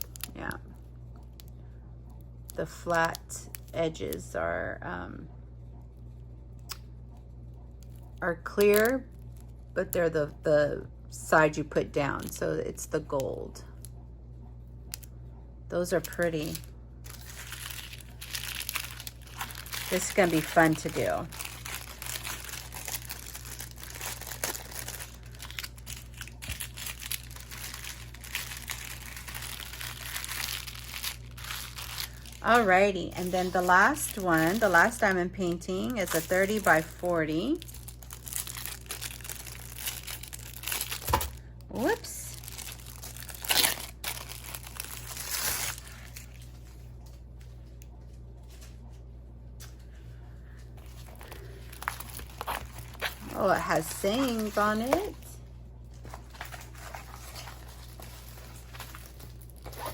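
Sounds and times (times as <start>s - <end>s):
plastic packaging crinkling: 0.0s - 1.6s, 7.8s - 9.6s, 15.8s - 46.8s, 50.8s - 59.9s.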